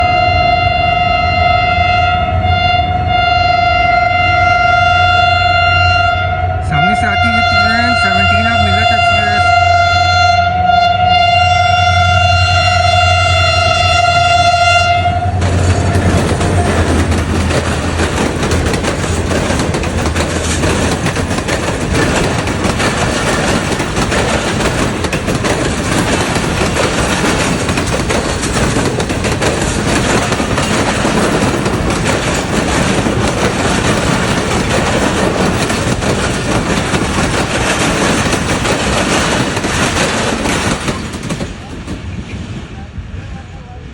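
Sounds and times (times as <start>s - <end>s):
locomotive horn: 0.0s - 17.1s
locomotive engine drone: 0.0s - 41.8s
train wagons rushing and clattering: 0.0s - 43.9s.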